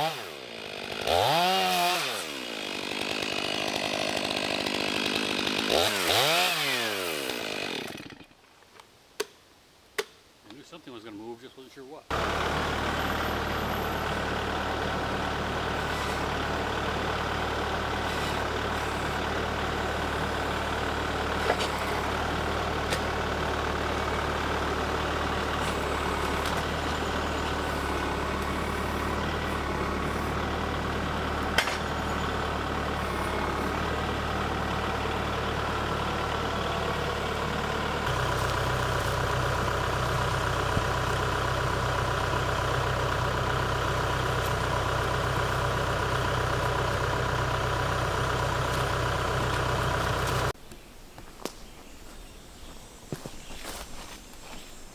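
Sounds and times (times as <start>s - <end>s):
large engine running: 12.1s - 50.6s.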